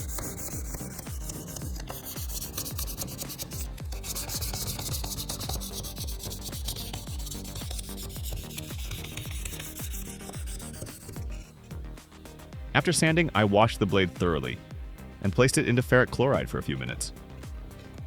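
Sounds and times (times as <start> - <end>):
sandpaper rubbing on steel blade: 0.0 - 11.7.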